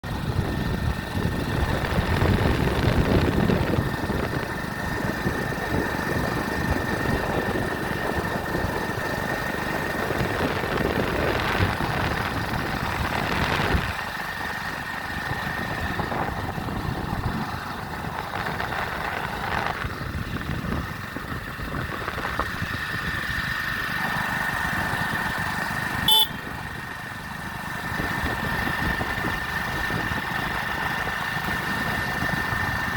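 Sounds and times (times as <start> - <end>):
road noise: 0.0 - 32.9
vehicle engine rumble: 0.0 - 32.9.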